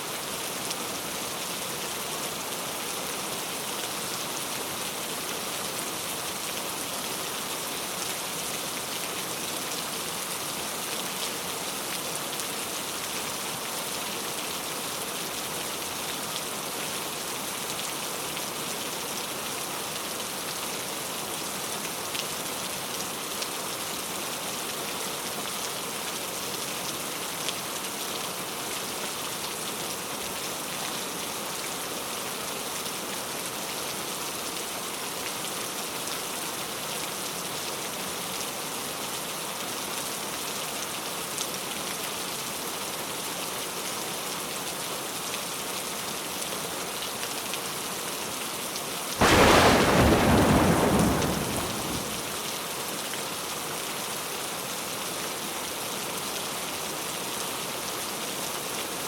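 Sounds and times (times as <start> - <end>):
thunder clap: 49.2 - 52.3
steady rain falling: 49.2 - 52.4.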